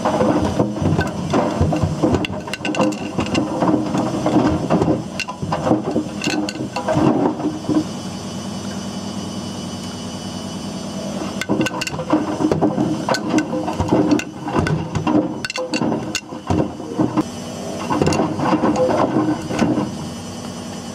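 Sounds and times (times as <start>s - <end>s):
objects knocking in washing machine drum: 0.0s - 7.4s, 11.3s - 17.2s
washing machine running hum: 0.0s - 20.9s.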